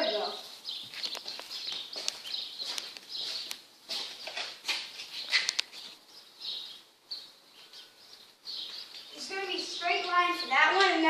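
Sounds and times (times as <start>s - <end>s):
sharp clicks: 5.4s - 5.7s.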